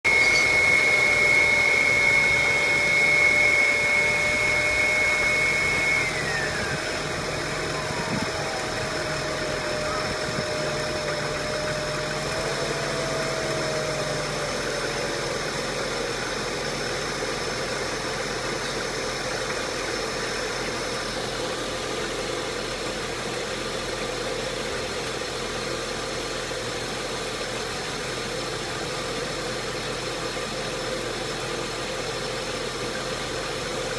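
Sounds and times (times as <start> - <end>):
high whine: 0.0 - 17.0
car engine idling roughly: 0.1 - 33.9.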